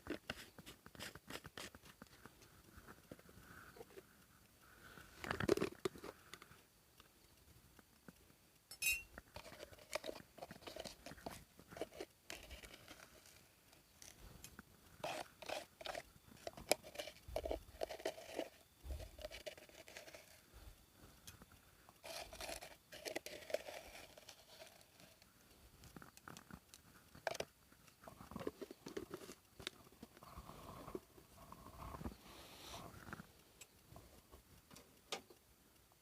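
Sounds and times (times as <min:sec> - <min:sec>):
sharp ringing click: 0:08.7 - 0:09.2.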